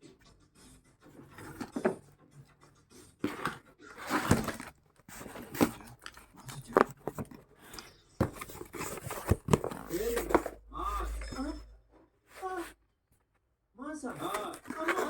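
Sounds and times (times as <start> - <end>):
packaging rustling and tearing: 3.2 - 11.2.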